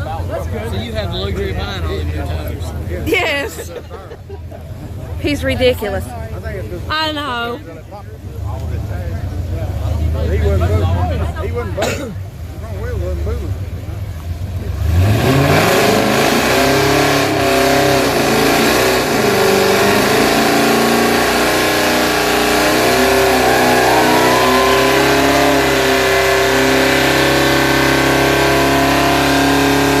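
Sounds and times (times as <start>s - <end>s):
engine revving hard: 14.6s - 30.0s.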